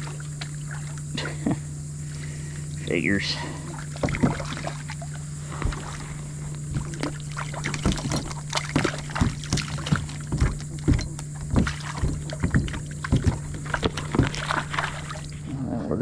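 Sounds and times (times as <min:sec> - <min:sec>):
low hum: 0:00.0 - 0:16.0
knocks against a plastic kayak: 0:05.5 - 0:15.4.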